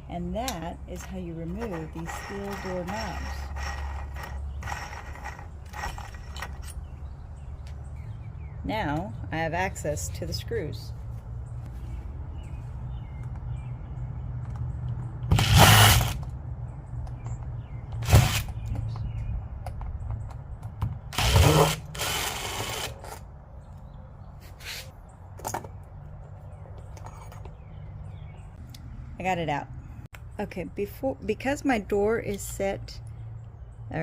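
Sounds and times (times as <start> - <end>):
power drill driver whirring: 1.6 - 6.7, 15.3 - 16.3, 21.1 - 23.2.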